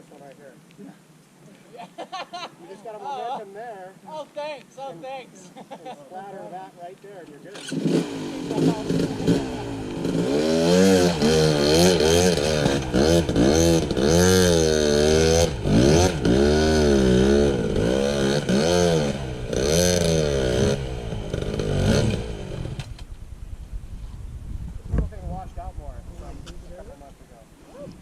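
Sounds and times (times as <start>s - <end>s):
dirt bike engine revving: 7.5s - 23.1s.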